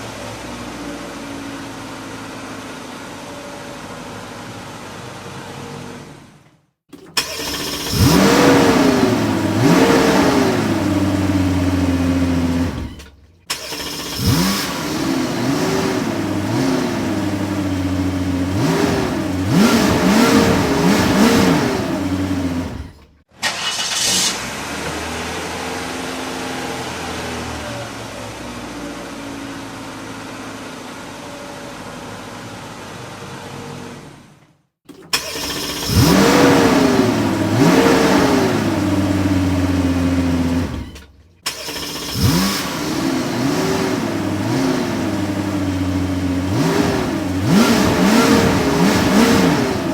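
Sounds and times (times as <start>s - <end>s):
car engine idling: 6.9s - 25.2s, 35.0s - 49.9s
car engine revving: 6.9s - 30.7s, 35.0s - 49.9s.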